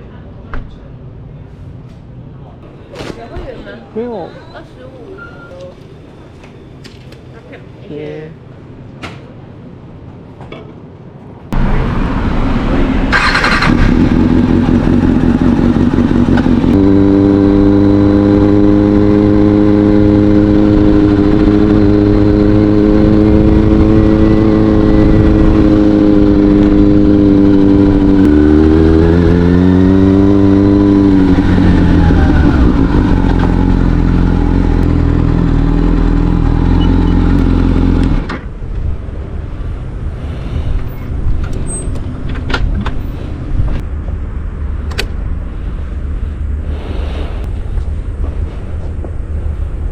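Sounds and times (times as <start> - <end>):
motorcycle engine: 11.6 - 39.2.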